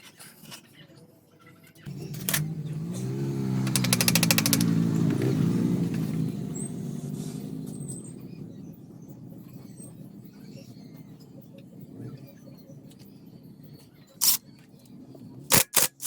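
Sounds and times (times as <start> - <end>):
motor hum winding down: 1.9 - 9.0
faint low rumble: 5.0 - 13.8.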